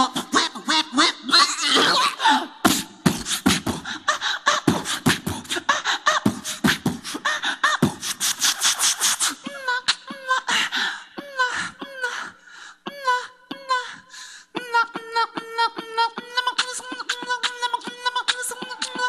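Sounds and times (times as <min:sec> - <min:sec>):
person beatboxing: 0:00.0 - 0:09.4, 0:16.4 - 0:19.0.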